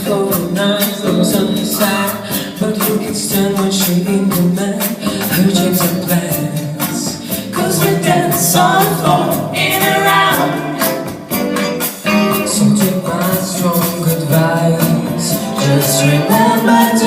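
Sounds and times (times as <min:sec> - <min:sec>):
steady beat: 0:00.0 - 0:17.0
women singing in harmony: 0:07.5 - 0:11.1.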